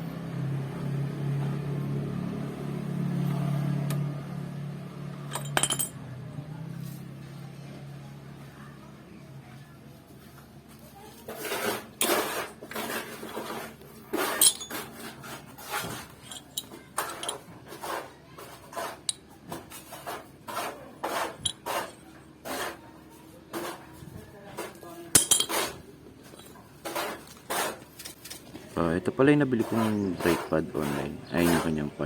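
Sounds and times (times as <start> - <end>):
metal tools clinking: 5.3 - 6.0, 14.2 - 15.2, 16.1 - 17.4, 21.3 - 22.0, 25.1 - 27.4, 28.0 - 28.6.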